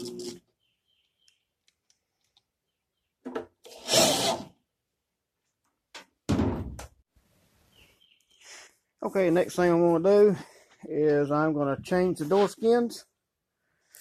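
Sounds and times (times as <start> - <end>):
thunks on sheet metal: 6.3 - 6.9.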